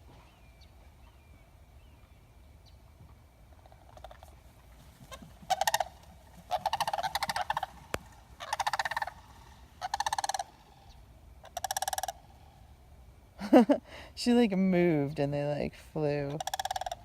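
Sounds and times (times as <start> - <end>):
cranes calling: 3.5 - 13.0, 16.2 - 17.0.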